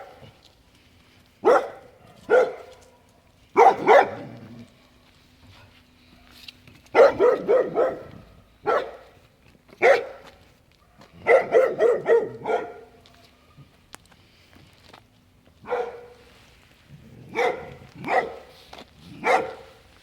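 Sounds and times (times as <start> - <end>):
dog barking: 1.4 - 4.4, 6.1 - 9.1, 9.8 - 13.2, 15.6 - 16.2, 17.2 - 18.5, 19.2 - 19.8.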